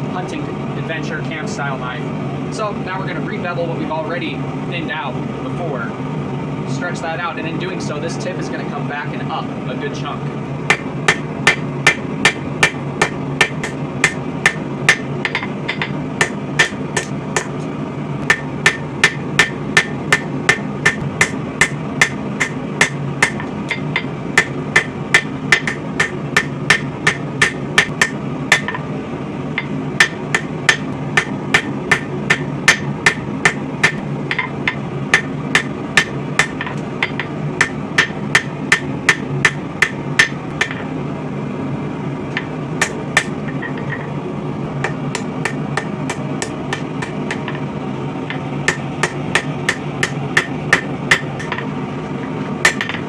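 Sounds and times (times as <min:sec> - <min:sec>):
steady low rumble: 0:00.0 - 0:53.0
hammer striking steel on anvil: 0:10.7 - 0:28.9, 0:29.6 - 0:40.9, 0:42.3 - 0:44.1, 0:44.8 - 0:47.6, 0:48.3 - 0:51.7, 0:52.6 - 0:53.0.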